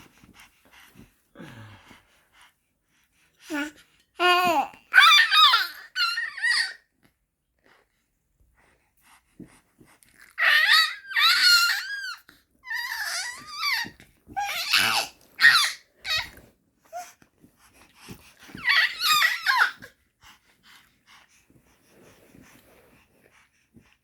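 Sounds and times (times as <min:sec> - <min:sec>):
baby squealing: 0:04.9 - 0:06.8, 0:10.4 - 0:16.3, 0:18.6 - 0:19.8.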